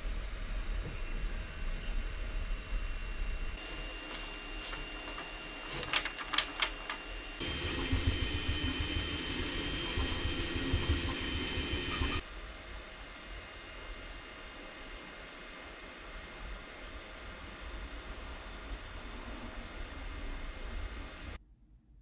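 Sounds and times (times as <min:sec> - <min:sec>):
small machine whining and humming: 0:00.0 - 0:21.4.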